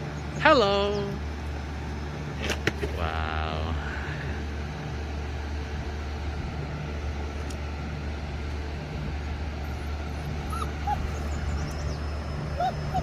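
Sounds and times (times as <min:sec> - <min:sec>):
dog whimpering: 0:09.6 - 0:13.0.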